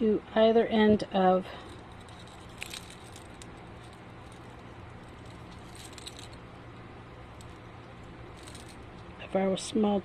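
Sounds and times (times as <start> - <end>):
low steady hum: 0.0 - 10.0
metal jewelry parts clinking: 1.6 - 6.5, 7.3 - 9.0.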